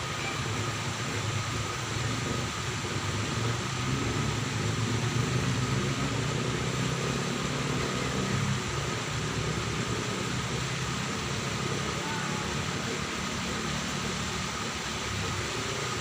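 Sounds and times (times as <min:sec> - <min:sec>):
faint high whine: 0:00.0 - 0:02.8
background hiss: 0:00.0 - 0:16.0
low mechanical hum: 0:00.0 - 0:16.0.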